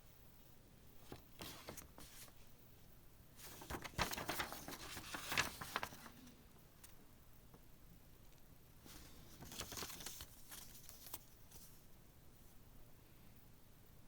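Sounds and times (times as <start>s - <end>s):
paper and packaging rustling: 1.0s - 2.4s, 3.4s - 6.4s, 8.9s - 11.8s.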